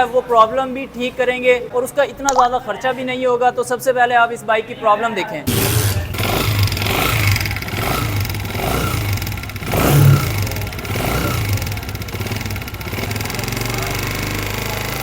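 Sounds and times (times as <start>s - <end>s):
abnormal mechanical engine noise: 5.5s - 15.0s
motorcycle engine revving: 5.5s - 15.0s.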